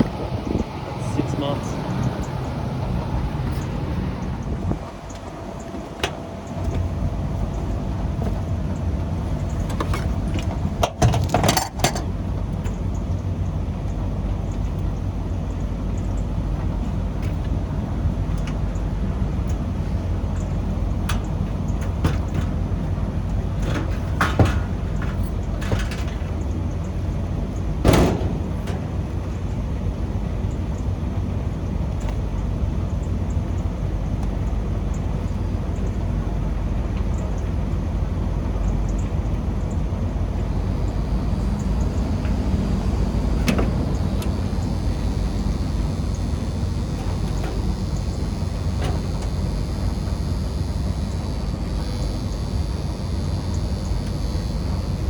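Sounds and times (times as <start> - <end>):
air conditioner rumbling: 0.0 - 55.0.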